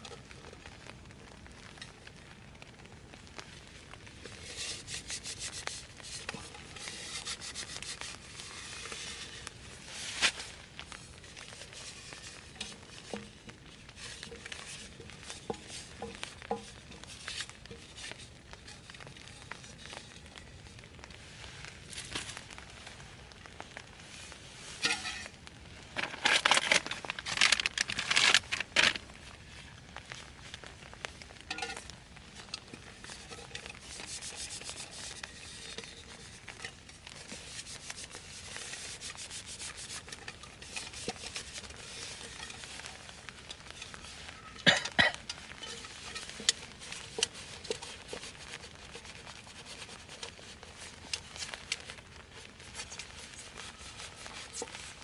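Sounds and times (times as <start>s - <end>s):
rubbing and scraping: 4.0s - 55.0s.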